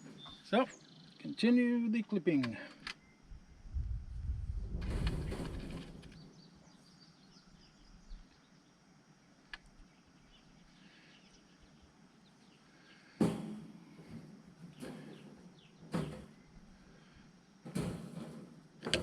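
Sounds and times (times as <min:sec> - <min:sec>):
faint birds chirping: 0:00.0 - 0:18.8
wire cage clattering: 0:04.8 - 0:06.1, 0:13.2 - 0:16.4, 0:17.7 - 0:19.0.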